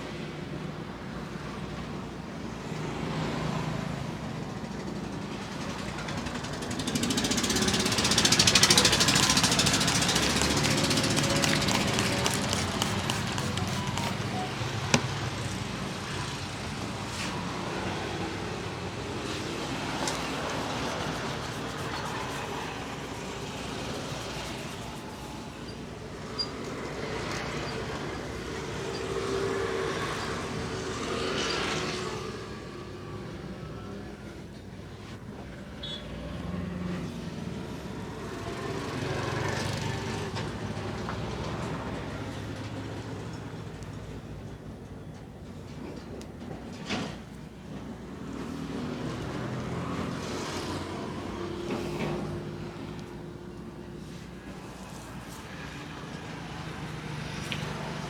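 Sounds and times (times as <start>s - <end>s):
road traffic rumble: 1.8s - 58.0s
passing vehicle engine hum: 6.1s - 34.3s.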